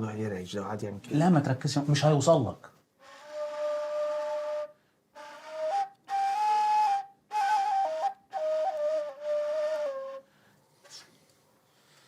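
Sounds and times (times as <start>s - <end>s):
breathy flute-like melody: 3.0s - 11.0s.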